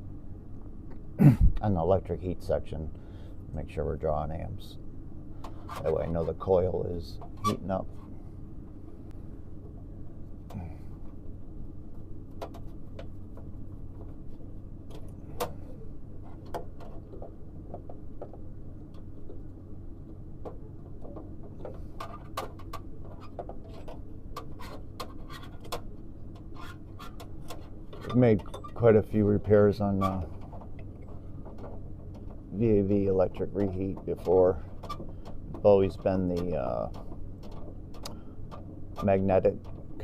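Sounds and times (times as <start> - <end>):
hvac equipment humming: 0.0 - 40.0.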